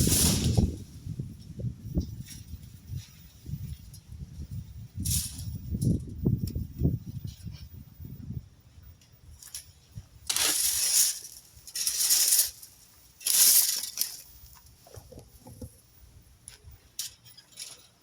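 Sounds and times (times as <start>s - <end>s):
rake scraping through leaves: 0.0s - 0.8s, 9.4s - 14.6s.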